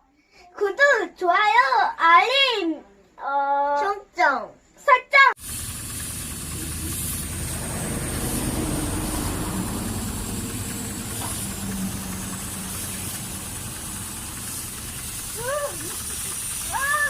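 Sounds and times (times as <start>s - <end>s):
engine idling: 5.4s - 17.0s
steady hiss: 5.4s - 17.0s.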